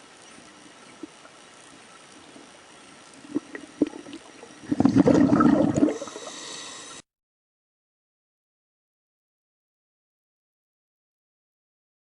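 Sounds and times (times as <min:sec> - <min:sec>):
water gurgling and splashing: 0:03.2 - 0:06.9.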